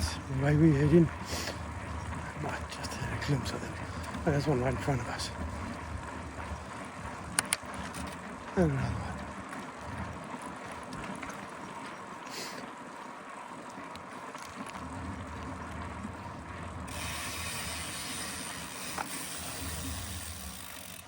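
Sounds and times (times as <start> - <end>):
bicycle freehub ticking: 16.6 - 21.0.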